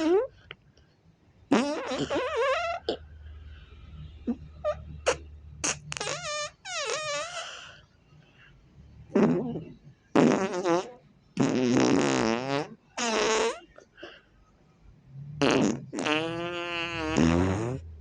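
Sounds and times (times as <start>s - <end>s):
fart sounds: 0.0s - 0.3s, 1.5s - 3.0s, 4.2s - 7.7s, 9.1s - 13.8s, 15.4s - 18.0s.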